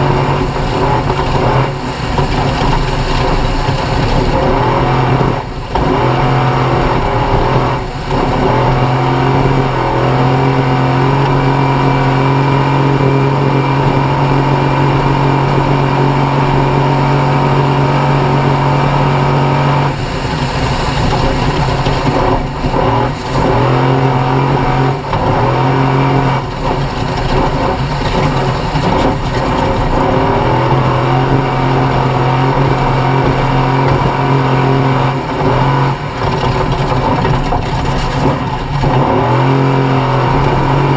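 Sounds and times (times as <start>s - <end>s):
race vehicle engine revving hard: 0.0s - 40.9s.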